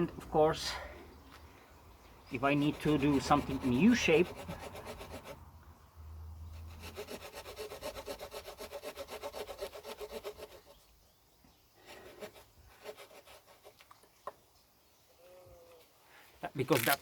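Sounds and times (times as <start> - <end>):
saw cutting wood: 2.4 - 5.4, 6.6 - 10.8, 11.9 - 13.8.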